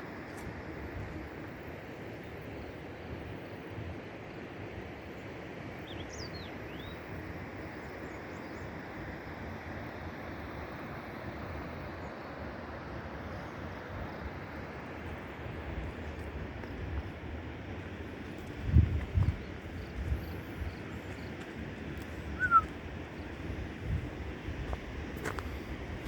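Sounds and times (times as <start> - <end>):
high bird chirps: 22.4 - 22.7.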